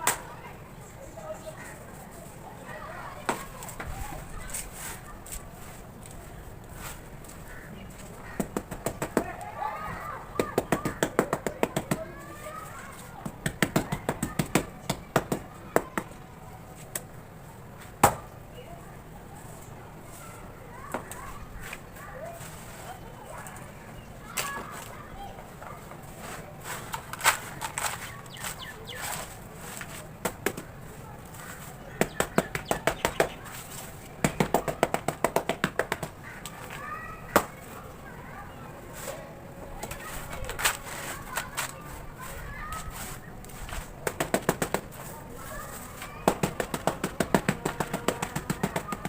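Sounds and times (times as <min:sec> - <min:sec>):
sharp taps on hardened cement: 0:08.0 - 0:09.5, 0:10.4 - 0:12.2, 0:13.2 - 0:16.2, 0:32.0 - 0:33.4, 0:34.2 - 0:37.6, 0:43.4 - 0:45.1, 0:46.2 - 0:49.0.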